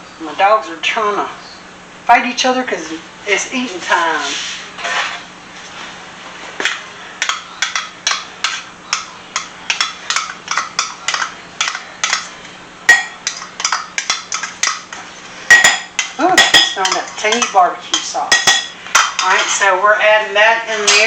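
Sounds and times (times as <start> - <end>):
spoon scraping a dish: 4.3 - 5.3, 7.2 - 12.4.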